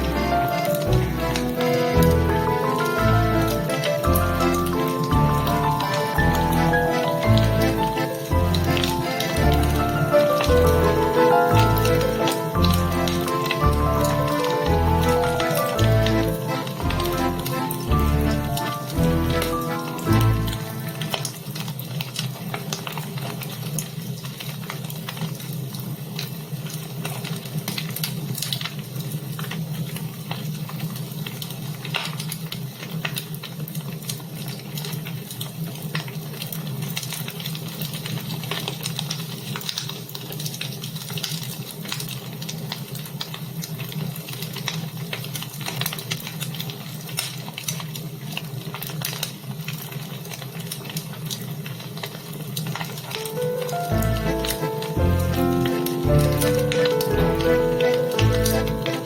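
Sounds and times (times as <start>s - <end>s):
fire hissing: 0.0s - 31.8s
fire crackling and popping: 0.0s - 59.0s.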